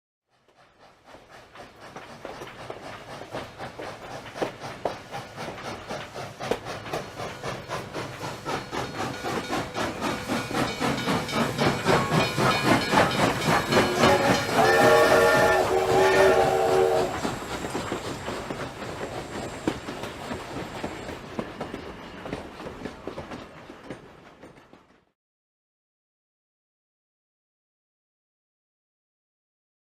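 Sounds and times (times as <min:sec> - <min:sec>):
steam locomotive chuffing: 0:00.3 - 0:25.1
train chord whistle blasts: 0:11.9 - 0:17.4.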